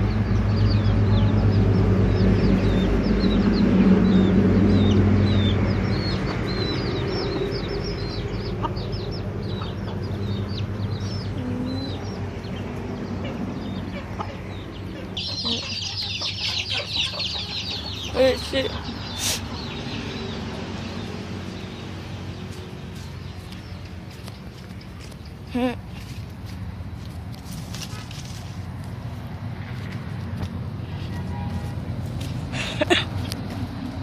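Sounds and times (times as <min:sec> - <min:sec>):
chicks peeping: 0:00.0 - 0:26.6
chickens clucking: 0:00.7 - 0:26.7.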